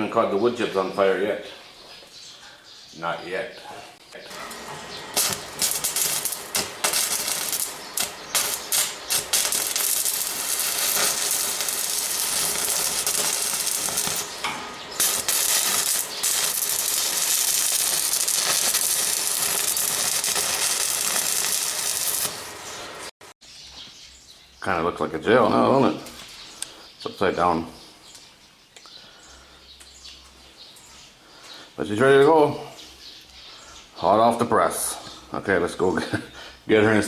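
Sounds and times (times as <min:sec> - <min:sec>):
arc welding hiss and crackle: 0:04.3 - 0:23.1.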